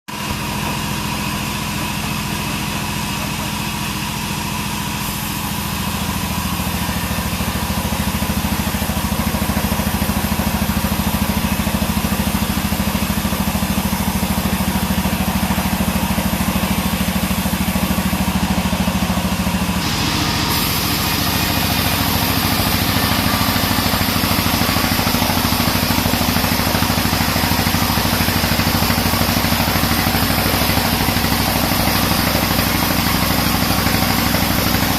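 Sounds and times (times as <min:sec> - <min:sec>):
band sawmill running: 0:00.1 - 0:34.9.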